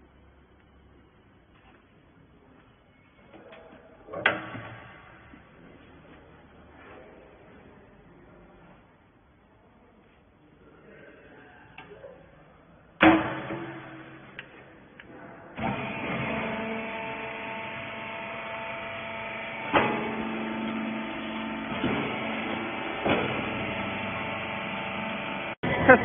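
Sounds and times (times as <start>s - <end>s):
loud metal clang: 13.0s - 14.4s
hydraulic machine motor droning: 13.0s - 26.0s.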